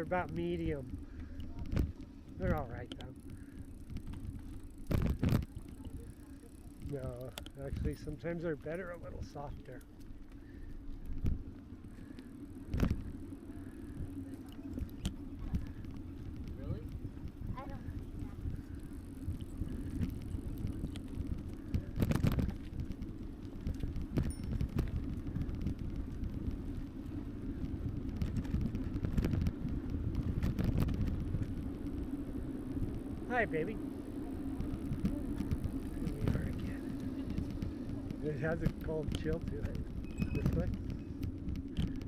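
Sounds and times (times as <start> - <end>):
bike frame rattling: 0.0 - 42.0
tyres rumbling on pavement: 0.0 - 42.0
wind buffeting microphone: 0.0 - 42.0
light ticks: 2.8 - 4.3, 6.8 - 7.6.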